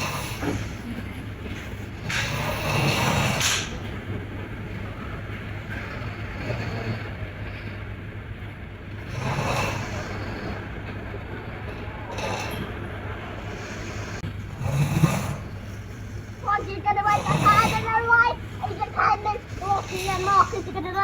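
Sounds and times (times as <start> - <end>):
person snoring: 9.1 - 10.6, 17.1 - 18.2, 19.5 - 20.8.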